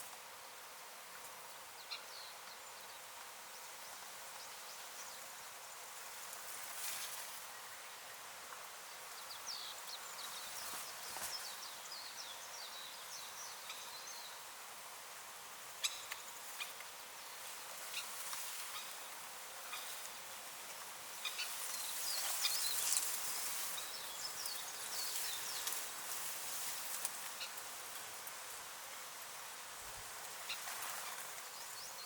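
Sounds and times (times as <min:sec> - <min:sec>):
high insect hiss: 0:14.0 - 0:32.0.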